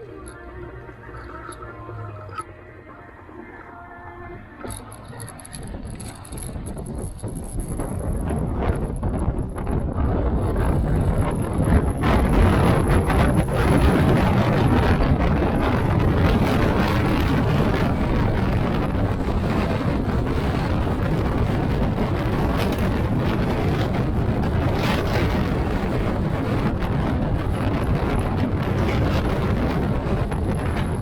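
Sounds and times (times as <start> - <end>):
low rumble: 0.0 - 31.0
wind buffeting microphone: 4.2 - 31.0.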